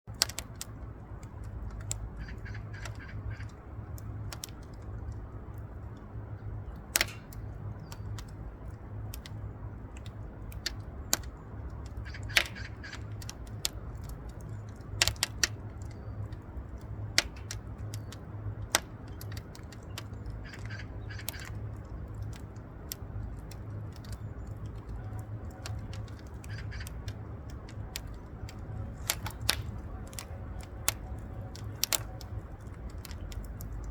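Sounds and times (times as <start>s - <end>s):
wood fire crackling in stove: 0.1s - 33.9s.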